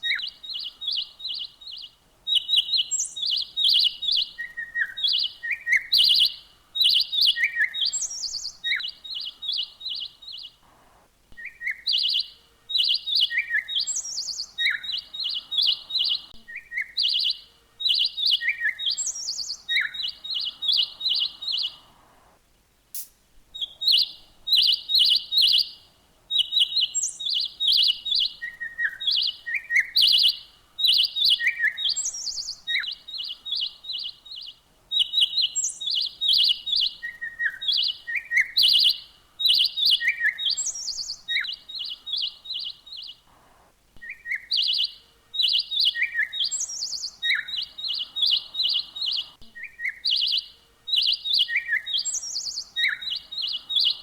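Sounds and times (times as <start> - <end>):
songbird singing: 0.0 - 54.0.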